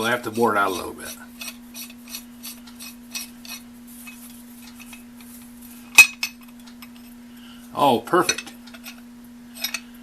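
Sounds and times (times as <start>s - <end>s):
metal clicks and scrapes: 0.2s - 5.4s, 8.4s - 9.0s.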